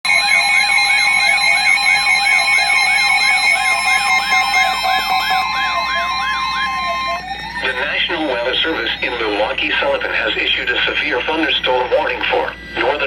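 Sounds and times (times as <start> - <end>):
warbling siren-like alarm: 0.0 - 13.0
steady alert tone: 0.1 - 13.0.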